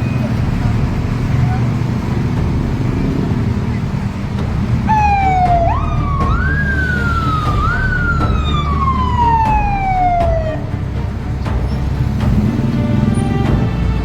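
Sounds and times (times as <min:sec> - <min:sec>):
low rumble of traffic: 0:00.0 - 0:14.0
emergency siren wailing: 0:04.8 - 0:10.8.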